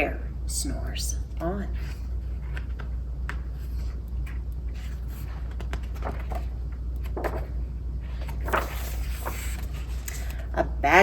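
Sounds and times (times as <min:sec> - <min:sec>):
steady low hum: 0:00.0 - 0:11.0
book pages rustling and turning: 0:01.8 - 0:10.5.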